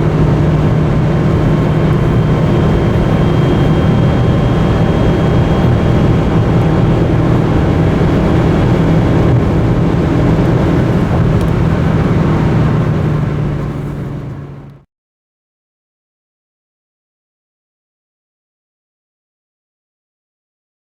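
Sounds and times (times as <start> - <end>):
wind noise: 0.0 - 14.8
car engine running steadily: 0.0 - 14.9
road noise: 0.0 - 14.9.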